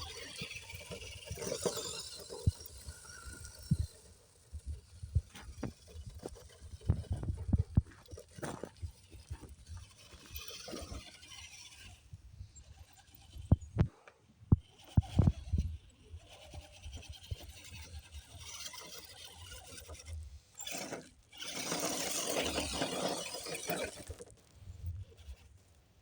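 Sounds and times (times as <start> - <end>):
toy truck scraping and rubbing: 0.0 - 25.6.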